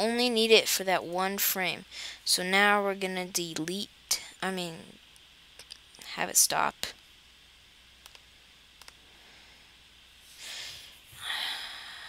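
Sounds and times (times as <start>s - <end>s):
computer mouse clicks: 8.0s - 9.0s
person breathing and sighing: 10.3s - 12.0s.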